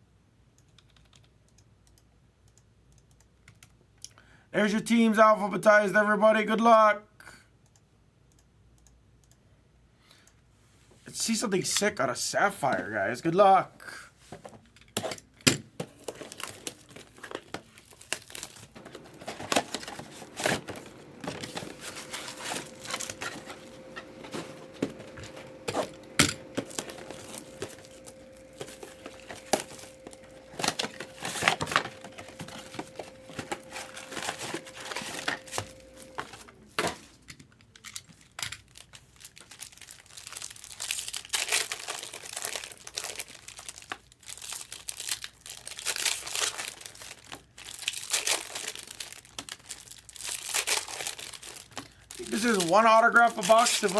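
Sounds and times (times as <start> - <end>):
plastic wrap crinkling and tearing: 15.9 - 36.5, 37.6 - 53.9.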